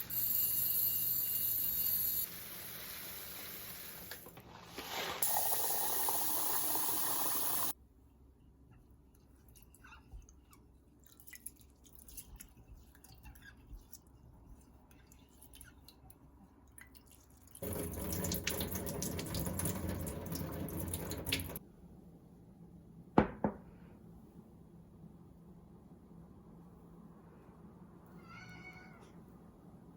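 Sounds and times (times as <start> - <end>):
water running from a tap: 0.0 - 4.3, 5.2 - 7.7, 17.6 - 21.6
water dripping: 16.7 - 21.6.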